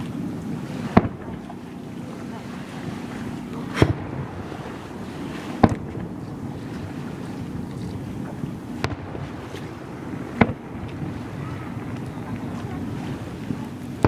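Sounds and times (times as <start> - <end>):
wind noise on microphone: 0.0 - 14.0
fireworks booming: 0.6 - 1.6, 3.0 - 7.3, 8.2 - 14.0.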